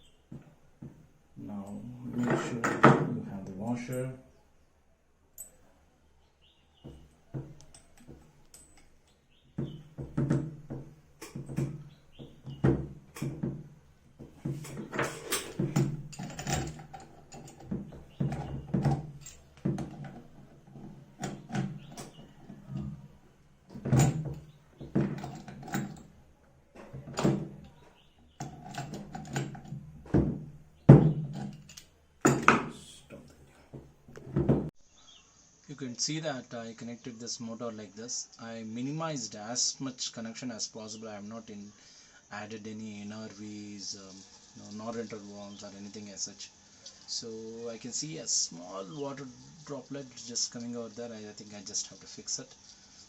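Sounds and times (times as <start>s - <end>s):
tools clattering on plumbing fittings: 1.6s - 3.1s, 6.8s - 26.2s, 26.8s - 34.7s.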